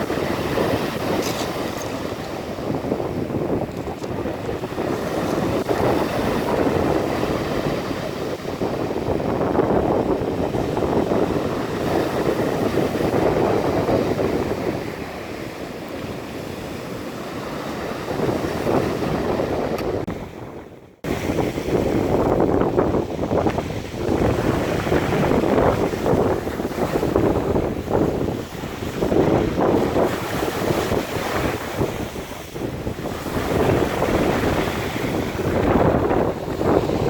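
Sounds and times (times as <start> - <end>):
stormy surf breaking on shore: 0.0 - 37.0
wind buffeting microphone: 0.0 - 37.0.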